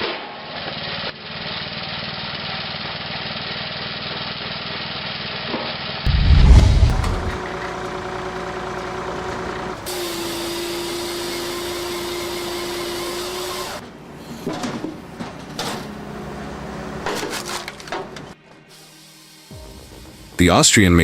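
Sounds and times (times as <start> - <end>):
machinery humming and whining: 6.1 - 18.3.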